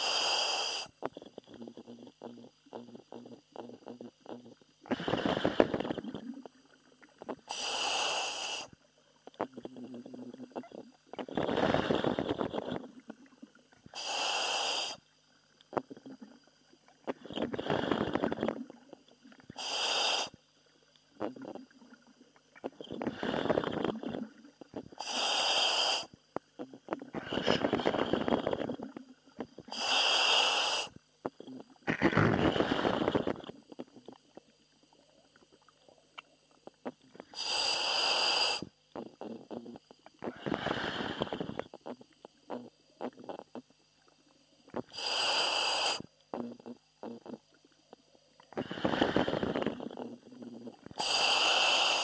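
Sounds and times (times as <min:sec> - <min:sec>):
breathing gear hiss: 0:00.0 - 0:01.0, 0:04.9 - 0:06.0, 0:07.4 - 0:08.8, 0:11.2 - 0:12.8, 0:13.9 - 0:15.0, 0:17.2 - 0:18.5, 0:19.5 - 0:20.4, 0:23.0 - 0:24.2, 0:24.9 - 0:26.2, 0:27.1 - 0:28.8, 0:29.6 - 0:31.0, 0:32.2 - 0:33.4, 0:37.2 - 0:43.4, 0:44.8 - 0:47.4, 0:48.6 - 0:52.0
diver breathing through helmet: 0:00.0 - 0:01.0, 0:07.5 - 0:08.7, 0:11.4 - 0:12.7, 0:14.0 - 0:15.0, 0:19.6 - 0:20.4, 0:23.0 - 0:23.9, 0:25.0 - 0:26.1, 0:29.7 - 0:30.9, 0:32.2 - 0:33.4, 0:37.3 - 0:38.7, 0:40.2 - 0:41.6, 0:44.9 - 0:46.0, 0:48.6 - 0:50.2, 0:51.0 - 0:52.0.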